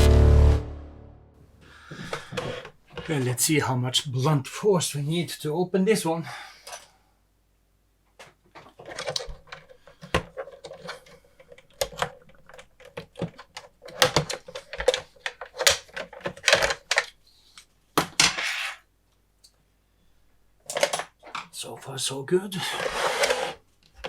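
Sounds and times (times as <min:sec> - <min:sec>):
case clicking knocking and rattling: 0:08.7 - 0:17.2.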